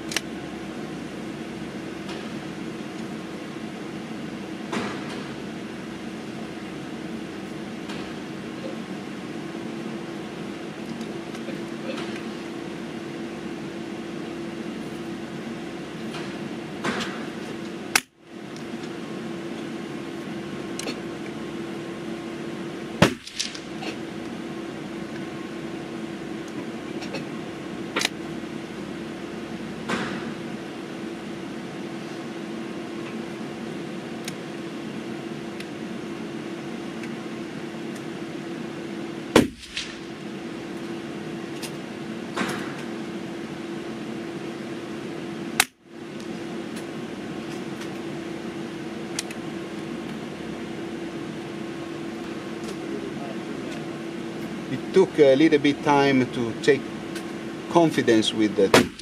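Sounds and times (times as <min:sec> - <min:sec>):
steady hum: 0:00.0 - 0:59.0
rifle shots: 0:23.0 - 0:23.8, 0:39.4 - 0:40.2.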